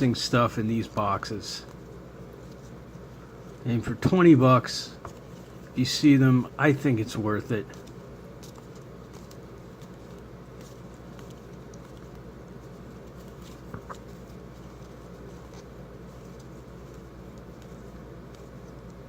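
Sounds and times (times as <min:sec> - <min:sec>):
steady low hum: 0:00.0 - 0:19.0
trading cards being flipped: 0:07.6 - 0:19.0.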